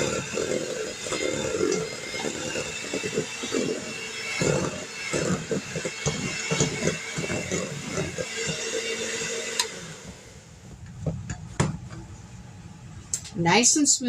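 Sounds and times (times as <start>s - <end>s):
electric mixer running: 0.0s - 10.8s.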